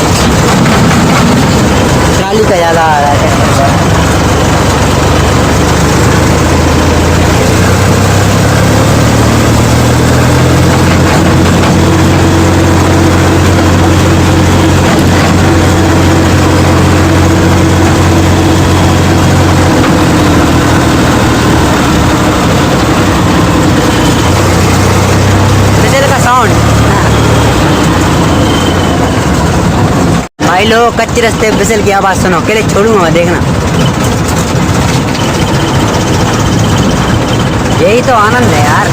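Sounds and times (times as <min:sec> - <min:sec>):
trolley rattling: 0:00.0 - 0:30.2, 0:31.3 - 0:38.9
tractor diesel engine running: 0:00.0 - 0:38.9
turbo whistle: 0:26.9 - 0:29.6.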